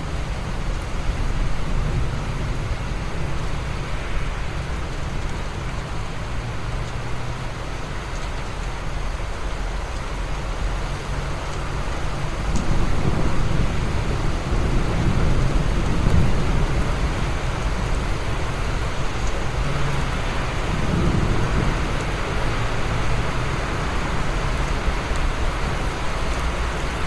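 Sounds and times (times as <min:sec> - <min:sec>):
heavy rain: 0:00.0 - 0:27.0
low rolling thunder: 0:12.3 - 0:26.7.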